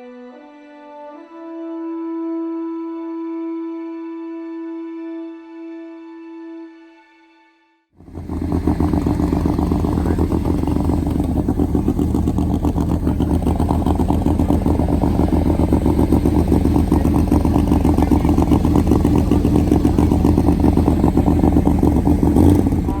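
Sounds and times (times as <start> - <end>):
music: 0.0 - 7.9
loud engine pulsing roughly: 8.0 - 23.0.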